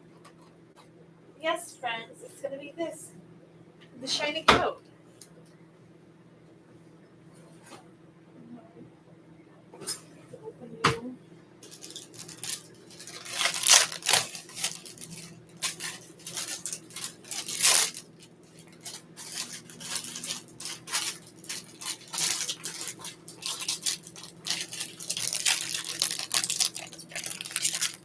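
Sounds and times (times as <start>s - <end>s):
kitchen scraping and rustling: 11.6s - 28.0s.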